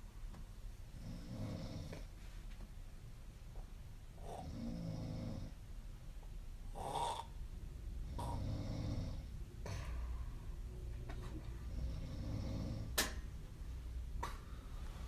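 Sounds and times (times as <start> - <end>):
woman snoring: 1.0 - 2.1, 4.2 - 5.5, 6.8 - 7.3, 8.1 - 9.3, 11.6 - 13.0.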